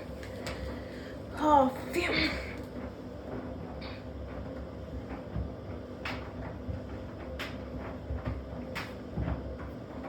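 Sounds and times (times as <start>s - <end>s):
washing machine rumbling: 0.0s - 10.0s.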